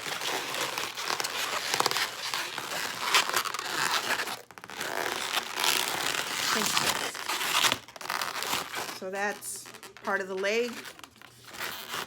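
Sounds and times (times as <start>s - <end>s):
balloon squeaking being twisted: 0.0s - 12.0s.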